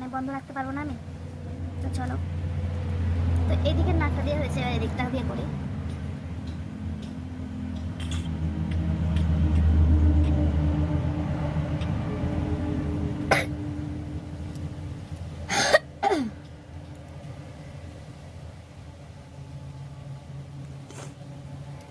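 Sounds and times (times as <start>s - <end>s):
heavy vehicle passing: 0.0s - 21.9s
road traffic rumble: 0.0s - 21.9s
woman coughing or sneezing: 13.3s - 13.5s, 15.5s - 16.3s.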